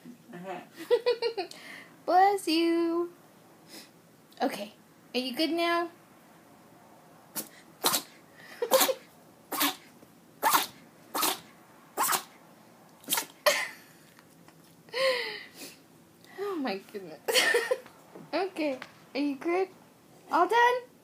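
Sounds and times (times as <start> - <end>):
puppy sneezing: 7.4 - 12.4, 13.0 - 13.5.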